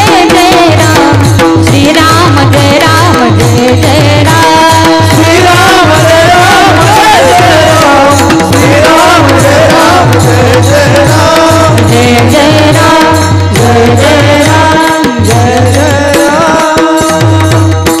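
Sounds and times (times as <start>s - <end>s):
drum beat: 0.0s - 18.0s.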